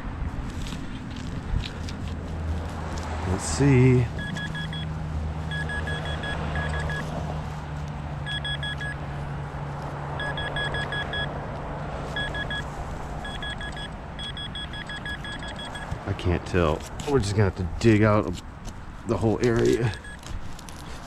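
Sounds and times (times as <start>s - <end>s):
metal detector high beeps: 4.2s - 4.9s, 5.5s - 7.0s, 8.3s - 9.0s, 10.2s - 11.3s, 12.2s - 15.9s.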